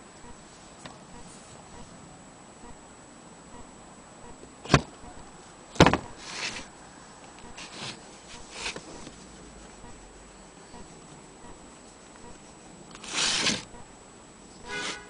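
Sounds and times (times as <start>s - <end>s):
soft rustling: 0.1s - 2.1s, 5.3s - 13.8s
sharp knocks: 5.8s - 6.2s.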